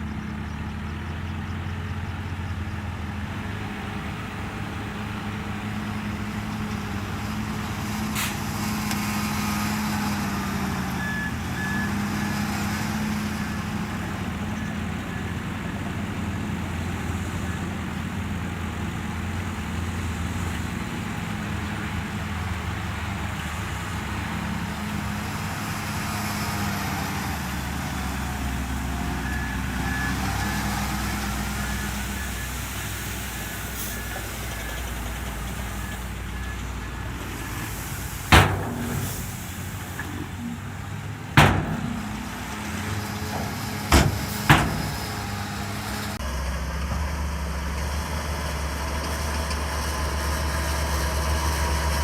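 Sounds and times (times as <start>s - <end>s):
bulldozer diesel engine running: 0.0s - 52.0s
loud metallic clanks: 38.3s - 40.6s, 41.3s - 46.2s.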